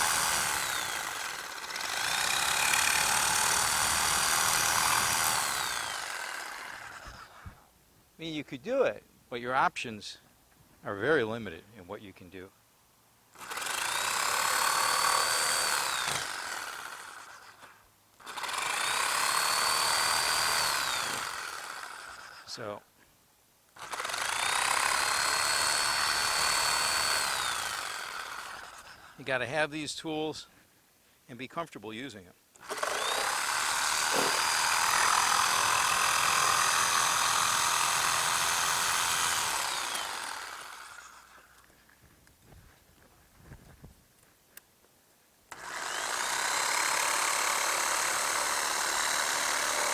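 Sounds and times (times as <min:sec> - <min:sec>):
power saw cutting wood: 0:00.0 - 0:07.6, 0:13.4 - 0:22.5, 0:23.8 - 0:29.2, 0:32.6 - 0:41.6, 0:45.5 - 0:49.9.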